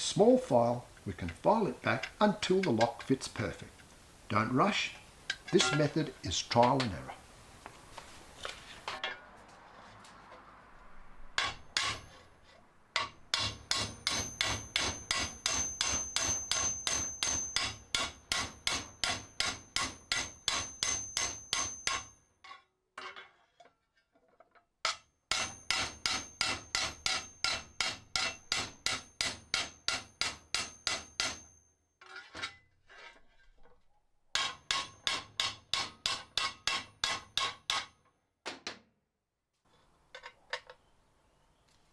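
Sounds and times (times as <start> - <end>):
hand tool filing sheet metal: 11.4 - 12.3, 13.0 - 22.1, 25.3 - 31.5, 34.4 - 37.9.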